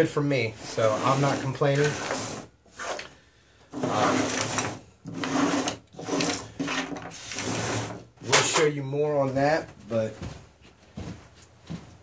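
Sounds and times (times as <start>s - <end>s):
rubbing strokes: 0.5s - 3.1s, 3.8s - 8.4s.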